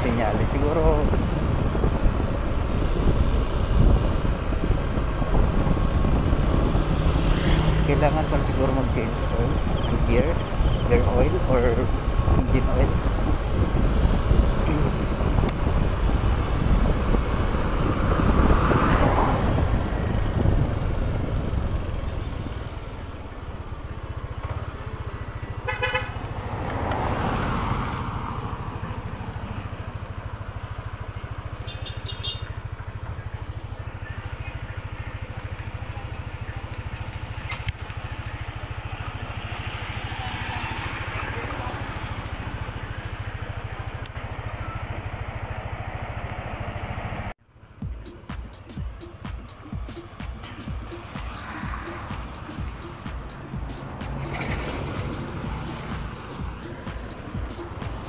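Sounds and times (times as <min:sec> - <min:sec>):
motor scooter engine: 0:00.4 - 0:58.0
horn toot: 0:25.6 - 0:26.3.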